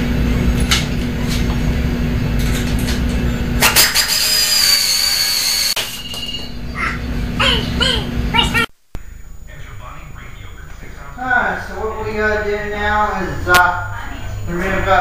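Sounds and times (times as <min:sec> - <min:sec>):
steady hum: 0:00.0 - 0:15.0
power tool running: 0:03.6 - 0:06.2.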